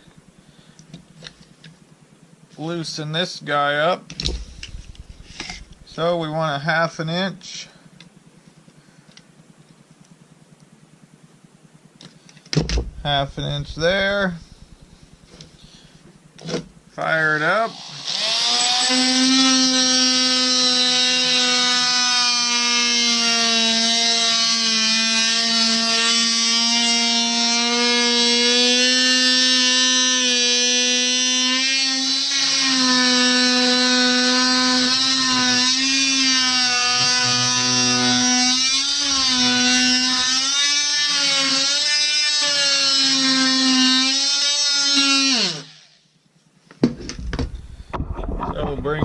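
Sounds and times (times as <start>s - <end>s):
oscillating multi-tool cutting wood: 4.1s - 6.3s, 12.8s - 16.6s, 17.4s - 46.0s.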